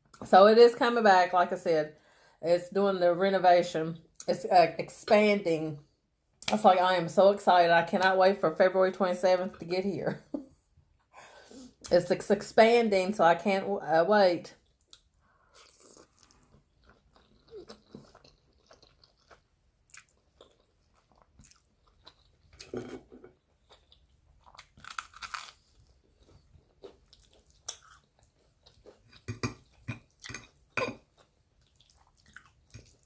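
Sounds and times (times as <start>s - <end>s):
wet chewing and mouth smacks: 14.6s - 22.8s, 23.5s - 33.0s.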